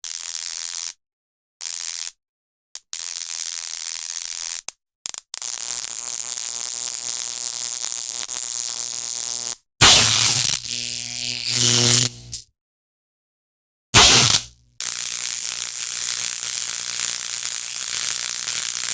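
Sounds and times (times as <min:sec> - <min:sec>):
stun gun electric crackling buzz: 0:09.0 - 0:12.5, 0:14.0 - 0:18.9.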